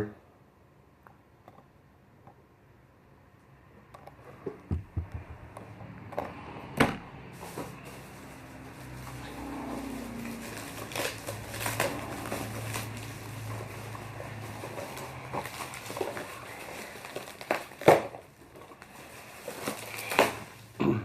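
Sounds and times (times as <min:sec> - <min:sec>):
plastic packaging crinkling: 0:07.4 - 0:20.8.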